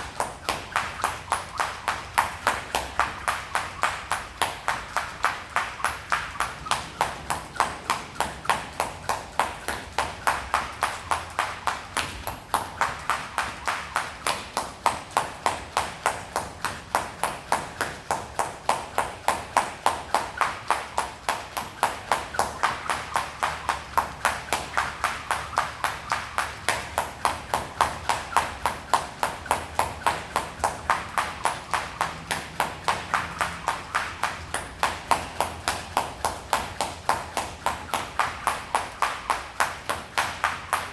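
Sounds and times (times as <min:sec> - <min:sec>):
jump rope slapping the floor: 0:00.0 - 0:40.9.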